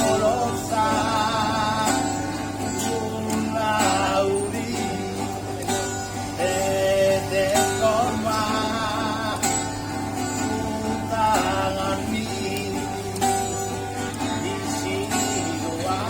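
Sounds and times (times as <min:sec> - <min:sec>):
man singing: 0:00.0 - 0:16.0
strummed acoustic guitar: 0:00.0 - 0:16.0.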